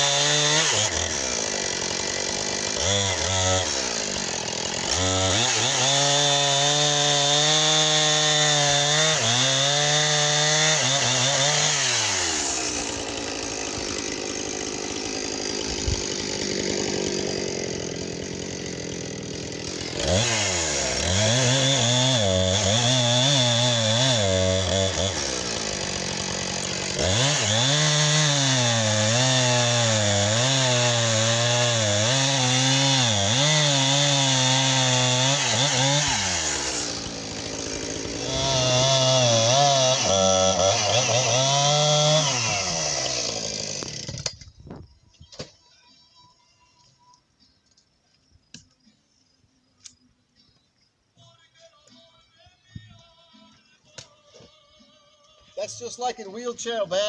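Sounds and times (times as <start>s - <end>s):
chainsaw cutting log: 0.0s - 45.5s.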